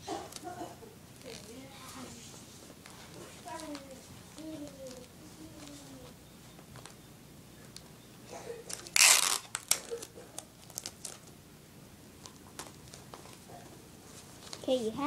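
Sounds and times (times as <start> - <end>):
paper crinkling: 1.1 - 6.1, 8.6 - 11.4, 14.1 - 14.7
tape ripping: 1.2 - 1.6, 8.7 - 11.4.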